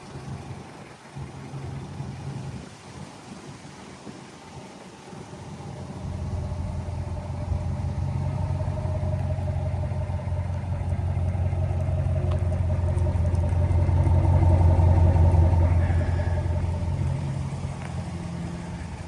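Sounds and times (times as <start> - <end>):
engine idling with low hum: 0.0 - 19.0.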